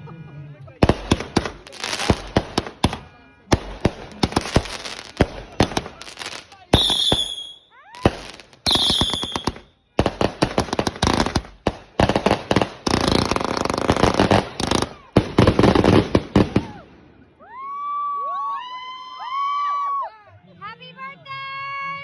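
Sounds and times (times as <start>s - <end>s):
fireworks bangs and crackles: 0.8s - 17.1s
high firework whistle: 1.6s - 10.1s.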